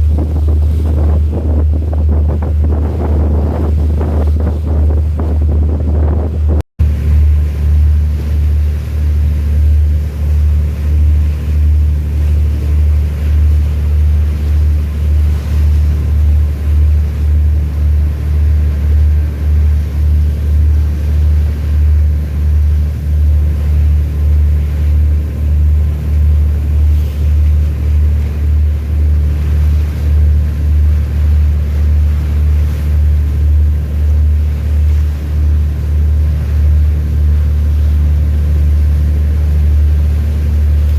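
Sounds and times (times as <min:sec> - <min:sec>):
ship engine pulsing rumble: 0:00.0 - 0:40.9.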